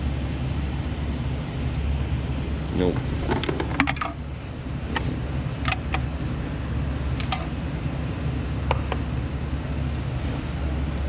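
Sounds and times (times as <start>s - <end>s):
steady low hum: 0.0s - 11.0s
screwdriver metal clicks: 7.2s - 7.5s.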